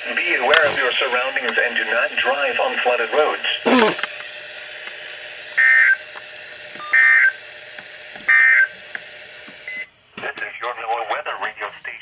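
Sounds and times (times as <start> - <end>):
radio hiss: 0.0 - 4.2.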